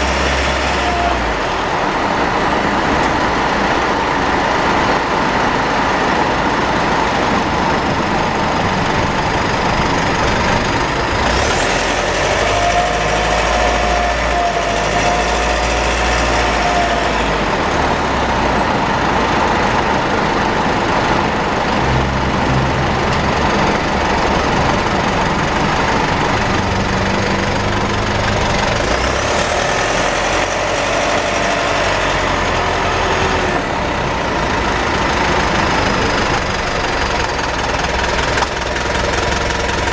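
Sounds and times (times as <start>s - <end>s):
high-pitched drivetrain whine: 0.0s - 39.9s
road and engine noise: 0.0s - 39.9s
lower tone swelling: 20.9s - 34.4s.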